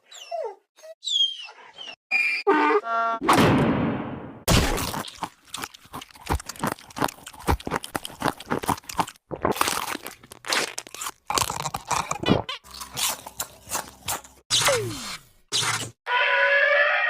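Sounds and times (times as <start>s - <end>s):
cartoon crunching clicks: 4.5s - 15.0s.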